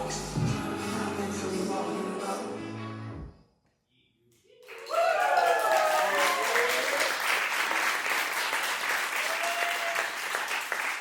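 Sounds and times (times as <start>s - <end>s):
music: 0.0s - 3.6s
audience applauding: 4.6s - 11.0s.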